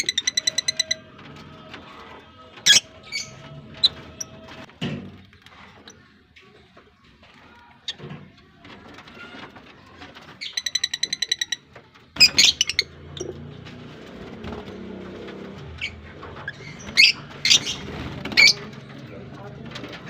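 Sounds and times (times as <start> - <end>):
lovebirds trilling chatter: 0.0 - 4.7, 10.0 - 14.4, 15.5 - 19.9.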